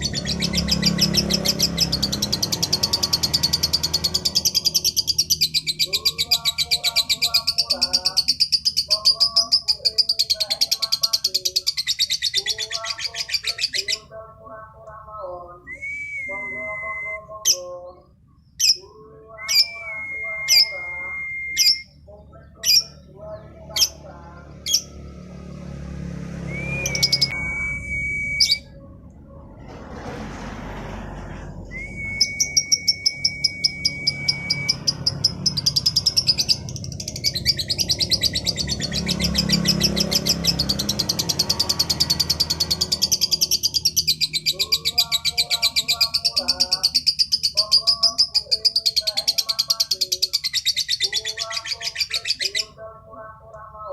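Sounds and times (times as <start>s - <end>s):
bird buzzy chattering song: 0.0s - 14.2s, 16.3s - 25.0s, 26.4s - 28.7s, 31.8s - 52.9s
bird long steady whistles: 19.4s - 21.9s, 26.5s - 28.7s, 31.7s - 34.9s.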